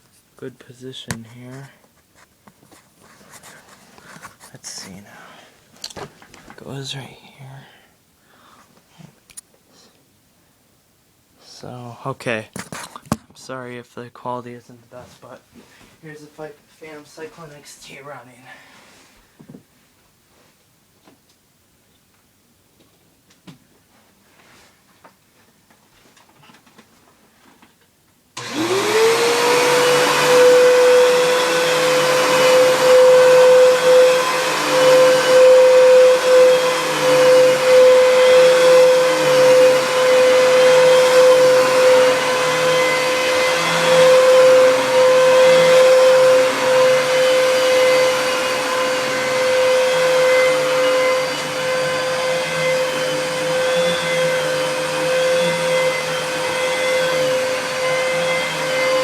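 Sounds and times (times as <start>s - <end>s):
vacuum cleaner motor whine: 28.4s - 59.0s.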